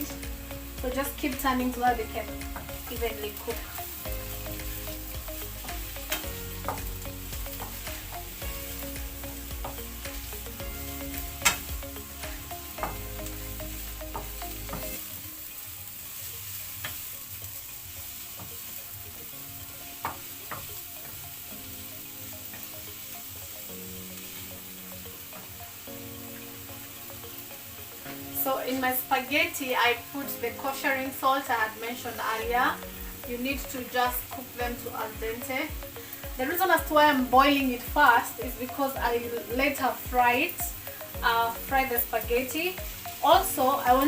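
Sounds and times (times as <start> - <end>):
mushrooms sizzling in oil: 0.0 - 44.0
utensil clicking against pan: 5.6 - 8.0, 11.4 - 11.8.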